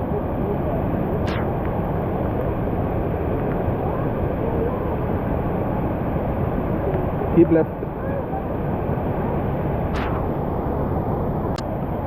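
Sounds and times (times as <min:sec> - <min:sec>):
sharp click: 0:01.3 - 0:01.7, 0:10.0 - 0:10.3.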